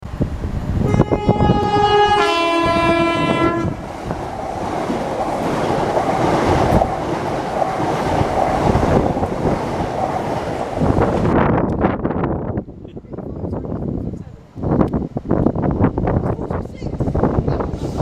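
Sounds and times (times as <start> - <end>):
train running through: 0.1 - 18.0
train two-tone horn: 0.8 - 3.8.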